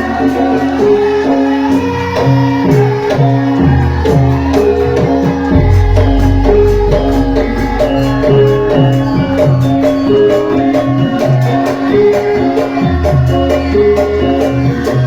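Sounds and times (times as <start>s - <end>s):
held instrumental tones: 4.5s - 15.0s
drum with low falling strokes: 5.4s - 11.6s.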